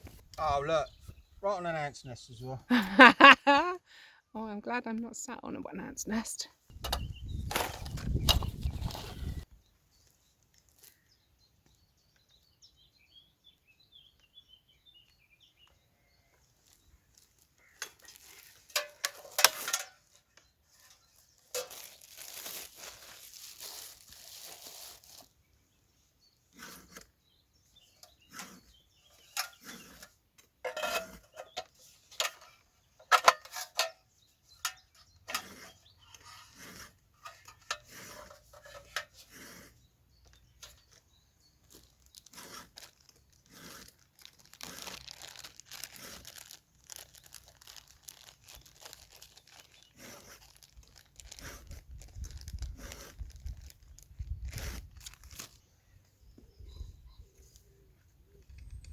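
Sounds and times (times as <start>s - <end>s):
rustling and crinkling: 6.7s - 12.4s, 15.6s - 56.6s
tearing: 21.4s - 25.4s, 26.5s - 27.1s, 28.3s - 30.2s, 41.6s - 55.6s.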